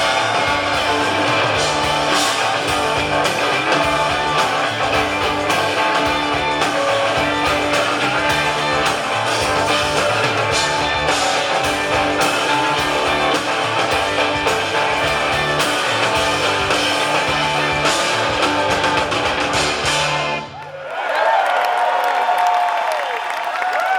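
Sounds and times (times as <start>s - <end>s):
live rock band instrumental: 0.0s - 20.6s.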